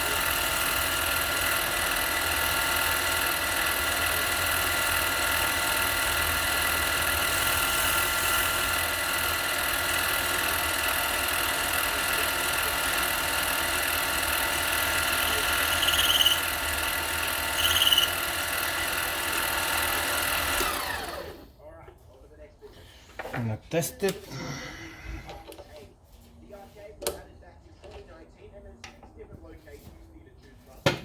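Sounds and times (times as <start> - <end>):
lathe running: 0.0 - 21.5
lathe spinning down: 14.8 - 18.4
high squeals: 17.6 - 18.1.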